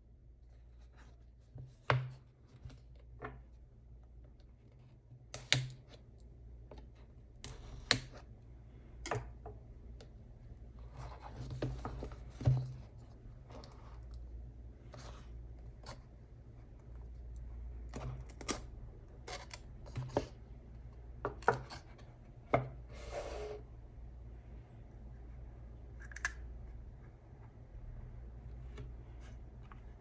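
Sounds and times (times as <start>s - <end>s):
box scraping slide: 22.9s - 23.7s.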